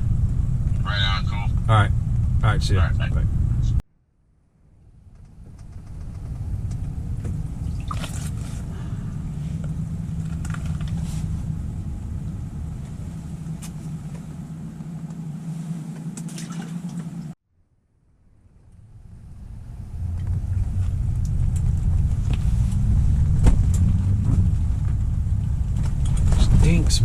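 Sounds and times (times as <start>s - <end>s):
vehicle engine running: 0.0s - 3.8s, 4.6s - 17.4s, 18.7s - 27.0s.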